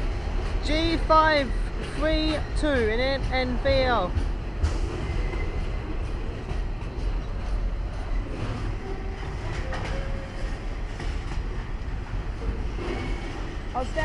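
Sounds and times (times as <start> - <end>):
freight train rumbling past: 0.0 - 14.0
wheels on rails: 0.0 - 14.0.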